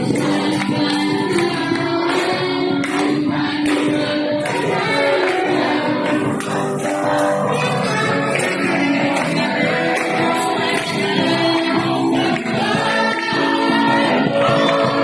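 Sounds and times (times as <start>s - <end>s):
instrumental accompaniment: 0.0s - 15.0s
voices singing a praise song: 0.0s - 15.0s.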